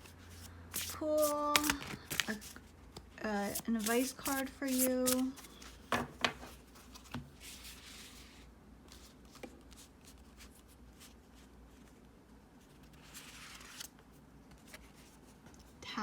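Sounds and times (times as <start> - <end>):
cards being shuffled: 0.3 - 8.3.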